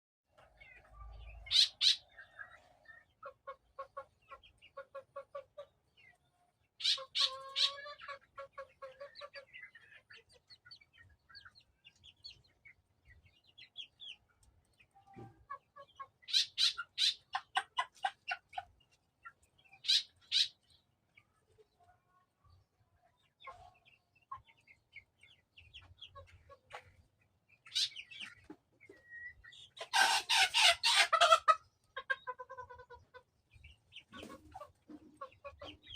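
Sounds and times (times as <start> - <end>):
chickens clucking: 0.3 - 35.9
high-pitched chicken calls: 0.8 - 5.7, 6.8 - 10.6, 15.1 - 18.7, 27.7 - 33.3.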